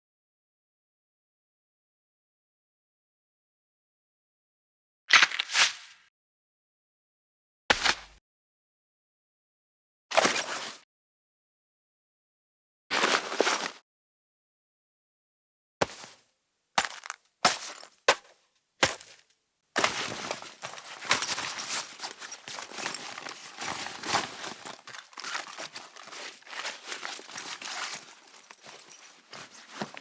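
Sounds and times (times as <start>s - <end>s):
fabric rustling: 19.8s - 30.0s.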